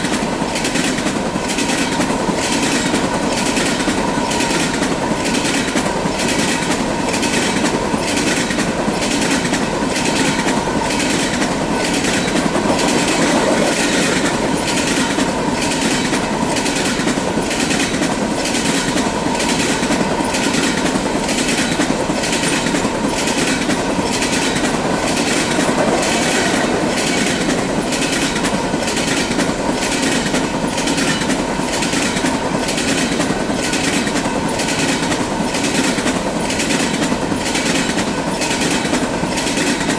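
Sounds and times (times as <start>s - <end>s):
wheels clicking over rail joints: 2.4s - 39.9s
freight cars rolling past: 23.3s - 28.3s.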